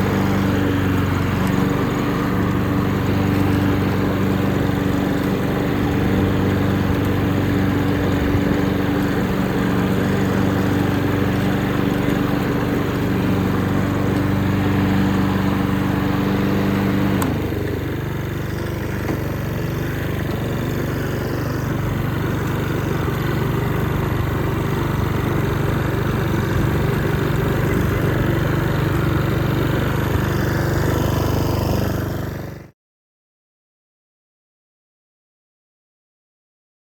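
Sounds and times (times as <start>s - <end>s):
lawn mower engine running: 0.0s - 32.7s
mower click: 17.1s - 17.5s, 18.5s - 19.4s.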